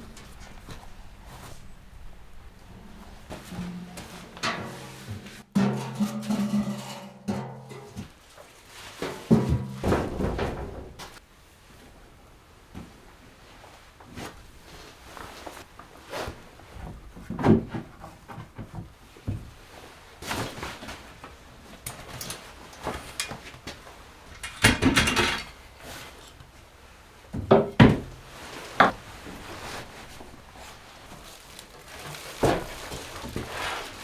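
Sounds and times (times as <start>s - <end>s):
scraping rustle: 0.0s - 5.5s, 8.0s - 12.0s, 28.2s - 34.0s
objects knocking and clunking: 0.0s - 11.2s, 16.6s - 26.5s, 27.3s - 34.0s.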